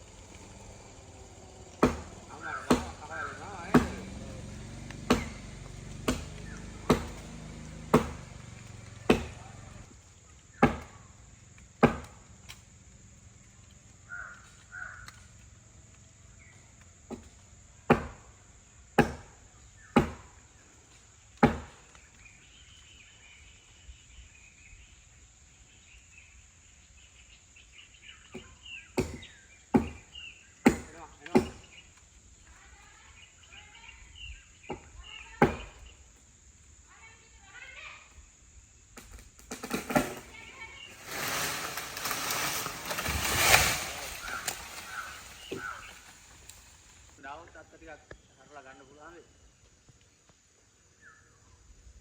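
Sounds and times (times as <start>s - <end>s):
faint bird calls: 0.0s - 4.6s, 13.9s - 15.5s, 40.3s - 47.2s
heavy tool striking wood: 1.8s - 3.1s, 3.7s - 4.1s, 5.1s - 5.4s, 6.0s - 7.2s, 7.9s - 8.3s, 9.1s - 9.4s, 17.9s - 18.2s, 19.0s - 19.3s.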